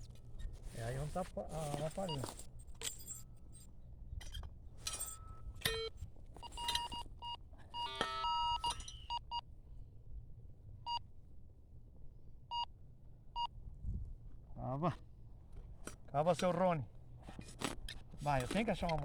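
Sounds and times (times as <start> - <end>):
metal detector beeps: 0.4 - 3.3, 4.9 - 9.4.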